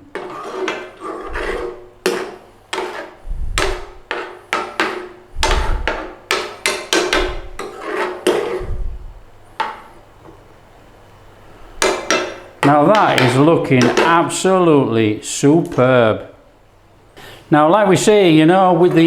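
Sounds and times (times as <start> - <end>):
metal utensil scraping a pan: 0.0 - 8.8.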